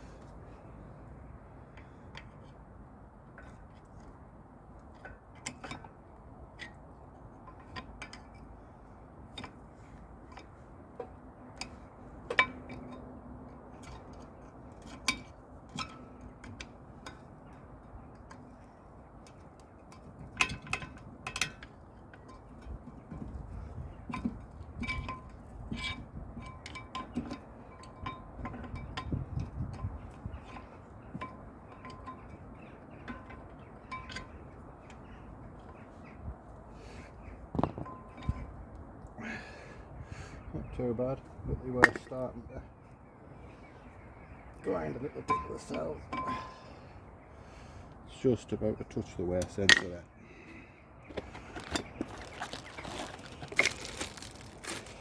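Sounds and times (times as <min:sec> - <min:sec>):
metal clicks of brake parts and tools: 0:45.3 - 0:46.6, 0:49.4 - 0:50.0.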